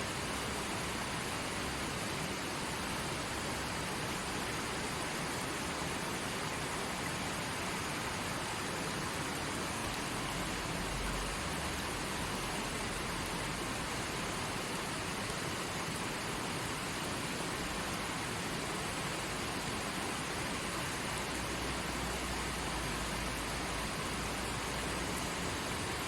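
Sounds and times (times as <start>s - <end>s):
stream flowing: 0.0s - 26.0s.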